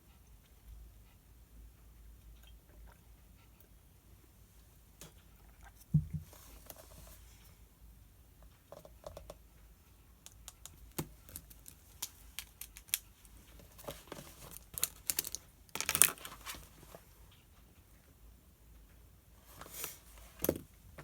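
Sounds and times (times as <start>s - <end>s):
light clicks and taps: 10.2s - 16.6s.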